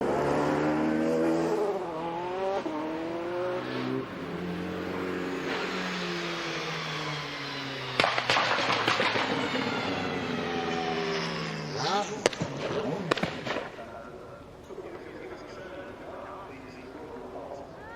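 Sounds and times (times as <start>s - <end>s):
racing engine revving: 0.0s - 13.7s
burst of sharp cracks: 8.0s - 10.0s, 11.1s - 13.8s.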